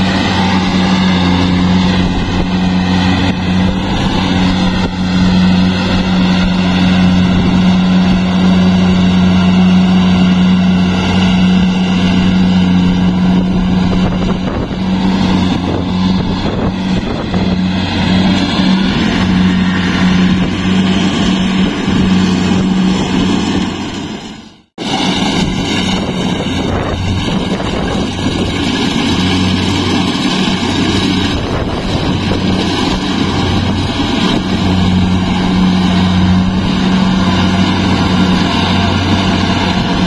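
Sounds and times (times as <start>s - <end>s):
combine harvester engine running: 0.0s - 40.0s.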